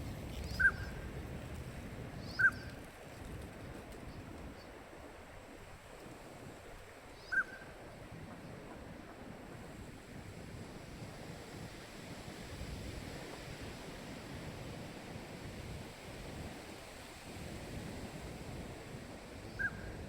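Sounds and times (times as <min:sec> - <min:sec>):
wind: 0:00.0 - 0:20.0.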